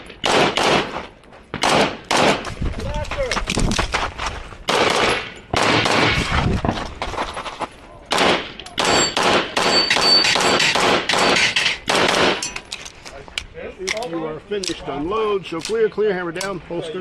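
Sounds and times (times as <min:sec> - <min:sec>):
rapid pistol fire: 0:00.2 - 0:00.9, 0:01.6 - 0:02.4, 0:04.7 - 0:06.2, 0:08.1 - 0:12.4.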